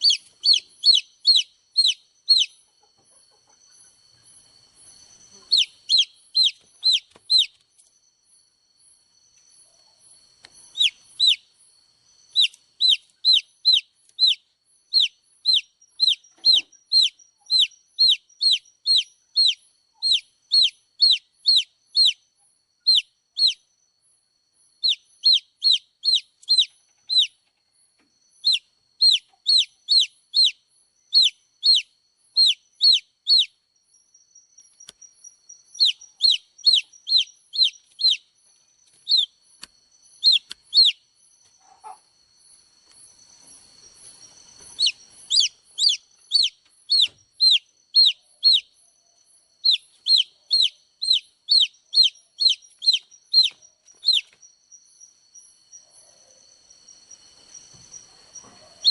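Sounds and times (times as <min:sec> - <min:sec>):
baby chicks peeping: 0:00.0 - 0:04.0, 0:05.2 - 0:07.7, 0:10.5 - 0:11.5, 0:12.3 - 0:23.6, 0:24.8 - 0:27.5, 0:28.4 - 0:33.6, 0:34.6 - 0:42.0, 0:44.2 - 0:48.7, 0:49.6 - 0:54.5, 0:57.7 - 0:58.9.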